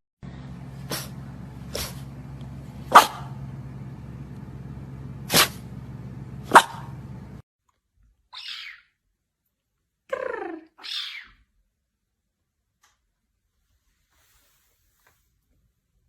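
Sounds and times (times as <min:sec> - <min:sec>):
steady low hum: 0:00.2 - 0:07.4
dog barking: 0:02.8 - 0:03.4, 0:06.4 - 0:07.0.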